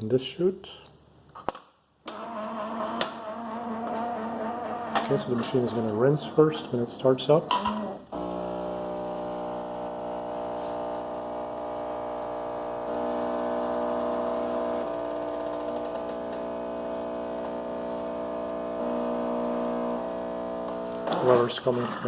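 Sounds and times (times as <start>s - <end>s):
espresso machine pump humming: 7.6s - 22.0s.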